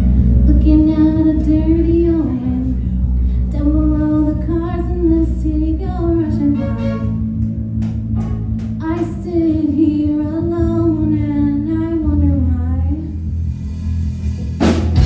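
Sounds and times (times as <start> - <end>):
woman singing lead: 0.4 - 7.2, 8.8 - 13.1
live rock band playing: 6.6 - 9.0, 13.6 - 15.0.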